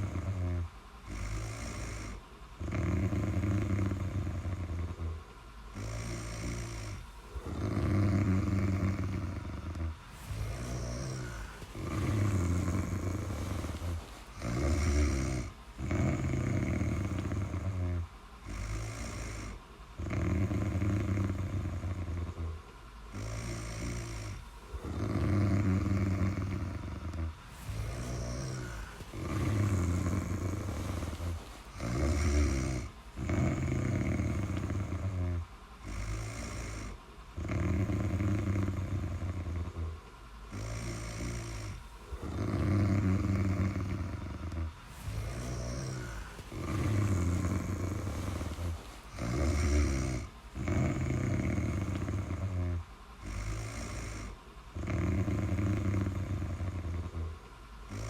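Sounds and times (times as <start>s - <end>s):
person snoring: 0.0s - 58.0s.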